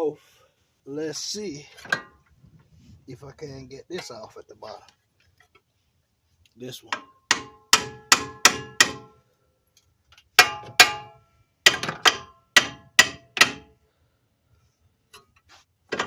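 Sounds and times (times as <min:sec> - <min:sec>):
hammer striking metal: 0:07.0 - 0:09.1, 0:10.4 - 0:11.1, 0:11.7 - 0:13.7.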